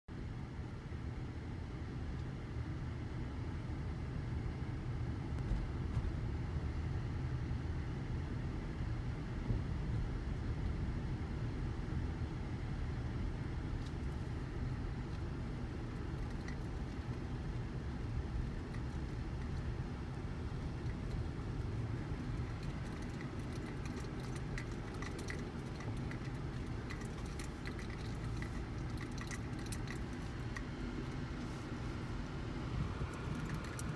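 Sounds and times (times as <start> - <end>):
blizzard wind buffeting microphone: 30.6 - 33.9.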